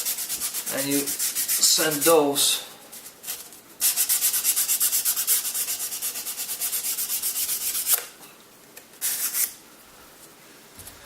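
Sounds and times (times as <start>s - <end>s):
sandpaper rubbing back and forth: 0.0s - 2.2s, 3.2s - 8.0s, 9.0s - 9.5s.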